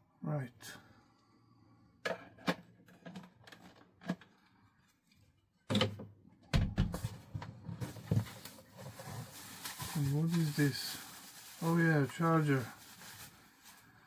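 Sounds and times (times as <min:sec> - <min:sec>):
plastic parts clicking and knocking: 0:02.0 - 0:04.4
heavier knocks and thumps: 0:06.5 - 0:07.2
packaging rustling: 0:07.8 - 0:14.0.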